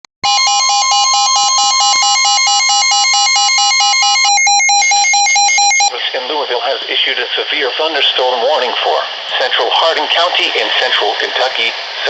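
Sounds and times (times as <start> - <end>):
rapid electronic beeping: 0.2 - 5.9
steady warning tone: 0.2 - 6.0.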